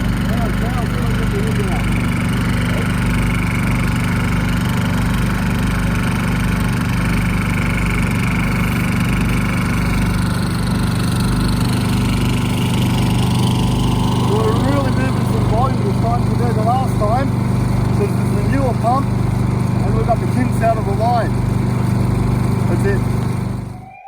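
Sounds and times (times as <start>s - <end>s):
generator engine running: 0.0s - 24.0s.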